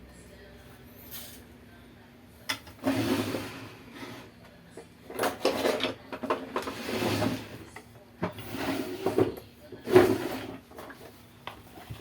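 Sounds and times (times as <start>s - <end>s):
rubbing and clattering of parts: 5.1s - 12.0s.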